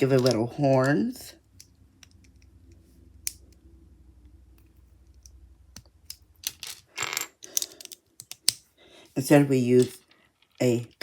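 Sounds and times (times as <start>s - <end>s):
plastic bricks clicking and clattering: 0.0s - 1.0s, 5.2s - 8.6s.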